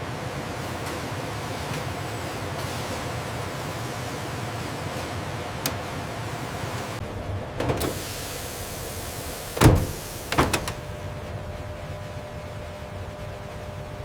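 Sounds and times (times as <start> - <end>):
background hiss: 7.8 - 10.8
short knocks and clicks: 9.6 - 10.8.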